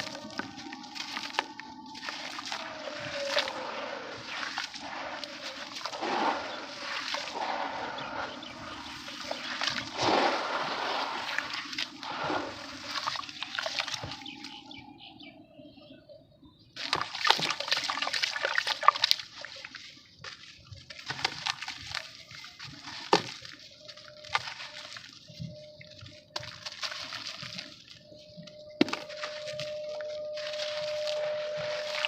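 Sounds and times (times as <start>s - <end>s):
splashing crackling fizz: 0.0s - 14.6s.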